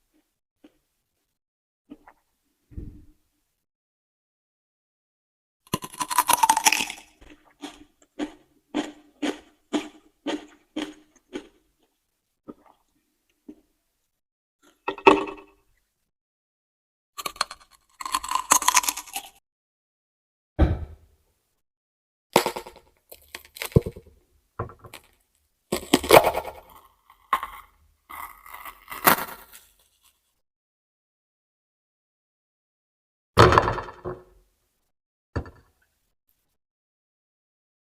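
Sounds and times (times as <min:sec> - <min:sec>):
crunching of raw vegetables: 0:05.7 - 0:13.7, 0:17.2 - 0:19.4, 0:22.4 - 0:24.2, 0:24.9 - 0:30.3.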